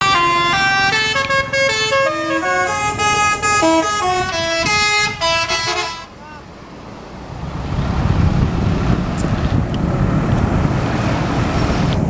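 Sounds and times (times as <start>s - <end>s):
musical bus horn melody: 0.0s - 6.2s.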